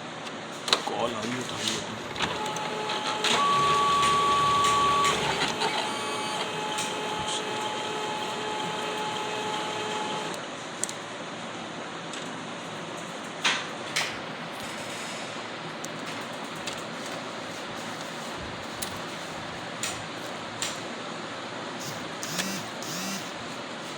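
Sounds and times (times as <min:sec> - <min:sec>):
printer whine: 0:00.7 - 0:10.4, 0:21.8 - 0:23.5.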